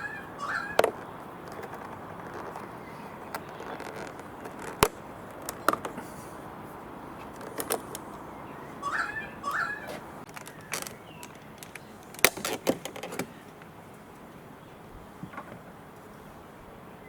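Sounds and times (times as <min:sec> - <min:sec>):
sharp clicks and knocks: 0:00.8 - 0:06.0, 0:07.2 - 0:08.2, 0:10.2 - 0:13.7.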